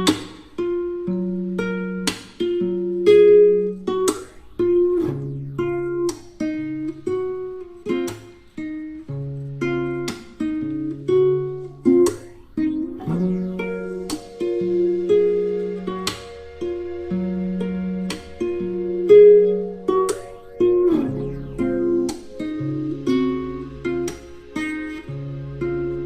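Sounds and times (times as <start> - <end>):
plucked guitar: 0.0 - 26.0
low bass line: 12.2 - 26.0.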